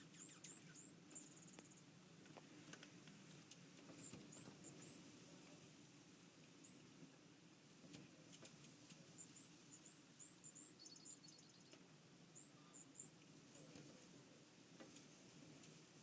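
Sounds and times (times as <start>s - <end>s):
bird trill: 0.0s - 1.8s, 9.2s - 11.8s
small birds chirping: 0.0s - 2.0s, 2.7s - 5.2s, 6.4s - 7.3s, 7.9s - 14.1s.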